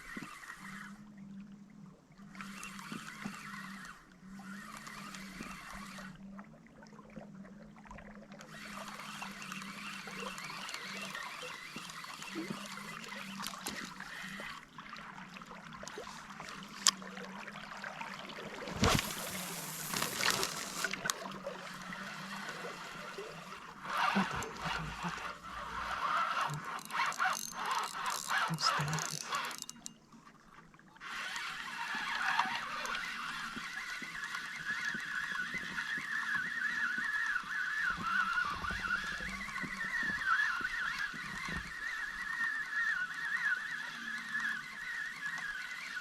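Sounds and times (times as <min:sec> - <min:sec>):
river water trickling: 0:00.0 - 0:46.0
water splashing rush: 0:18.4 - 0:27.1.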